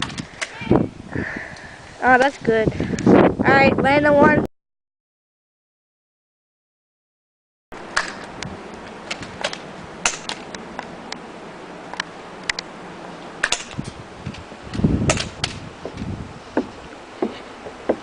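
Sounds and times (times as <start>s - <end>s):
low rumble on microphone: 13.8s - 18.0s.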